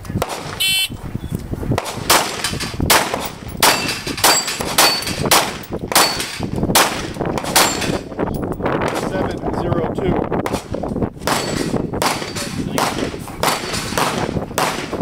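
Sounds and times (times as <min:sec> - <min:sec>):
pistol shots: 0:00.2 - 0:00.9, 0:01.8 - 0:08.0, 0:10.5 - 0:15.0.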